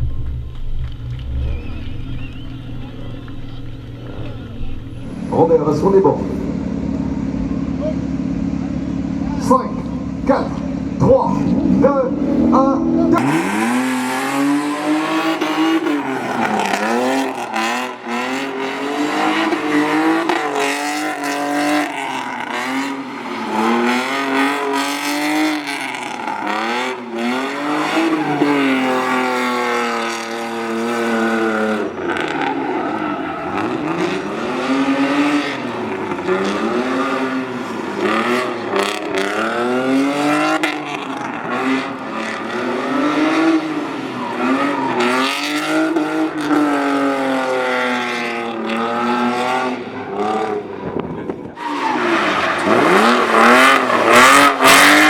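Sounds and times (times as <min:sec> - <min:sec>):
car engine revving hard: 0:10.8 - 0:55.0
tyres squealing: 0:13.2 - 0:46.6, 0:51.4 - 0:55.0.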